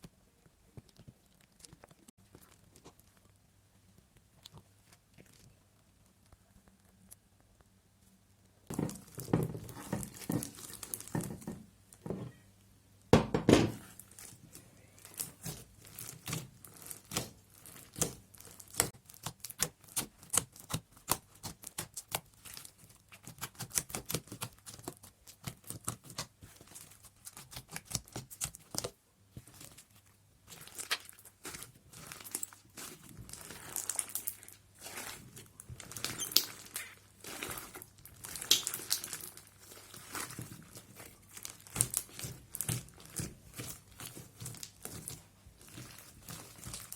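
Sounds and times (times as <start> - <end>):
crunchy slime crackling: 8.7 - 12.4, 13.8 - 46.9
loud thump: 13.2 - 13.8.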